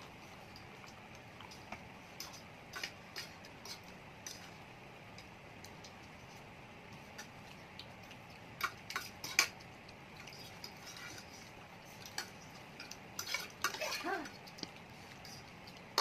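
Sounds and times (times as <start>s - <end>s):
utensils clinking against bowls: 8.0s - 16.0s.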